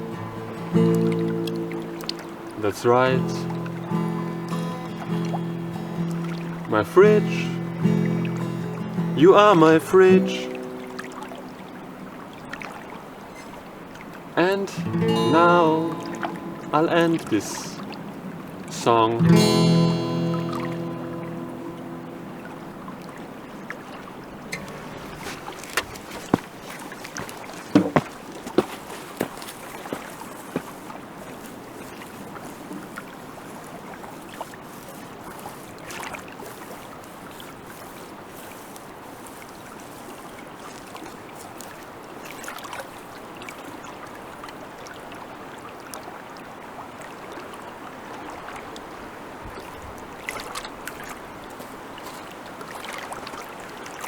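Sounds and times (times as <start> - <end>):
water lapping and sloshing: 0.0 - 54.0
small splashes or knocks: 22.4 - 43.8, 49.5 - 54.0.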